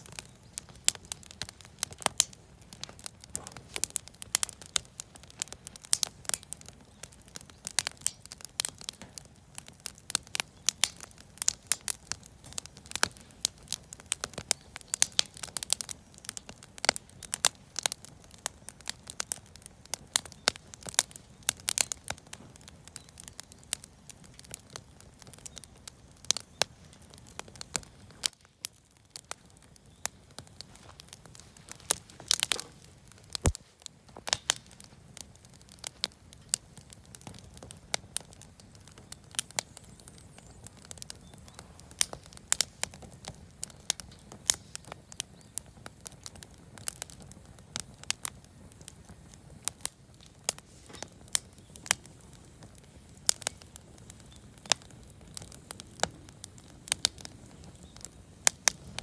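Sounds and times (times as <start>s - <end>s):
campfire crackling and popping: 0.0s - 59.0s.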